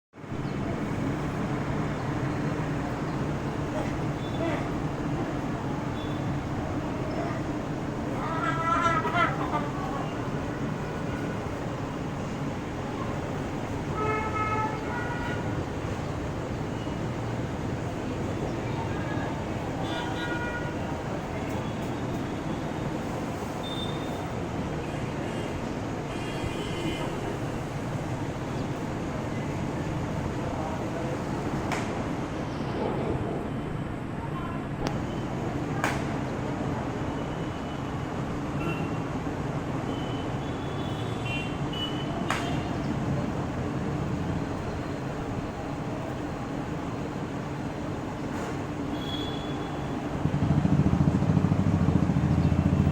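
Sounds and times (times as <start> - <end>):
road traffic: 0.1 - 52.9
vehicle horns tooting: 13.9 - 15.6, 48.9 - 50.0.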